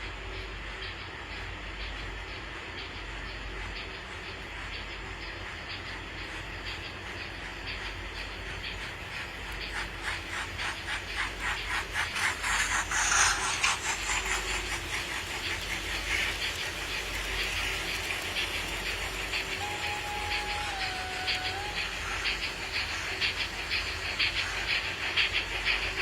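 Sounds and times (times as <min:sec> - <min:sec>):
model steam locomotive chuffing: 0:00.0 - 0:26.0
steam hiss: 0:00.0 - 0:26.0.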